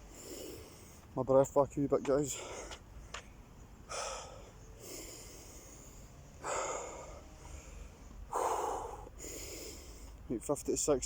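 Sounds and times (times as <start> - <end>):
man breathing hard: 0.0 - 1.1, 2.3 - 3.1, 3.8 - 10.2.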